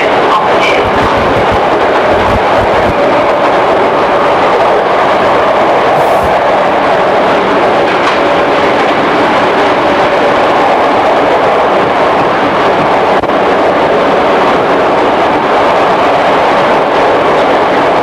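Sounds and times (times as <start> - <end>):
faint steady hum: 0.0 - 4.2
train wheels and motors roaring: 0.0 - 18.0.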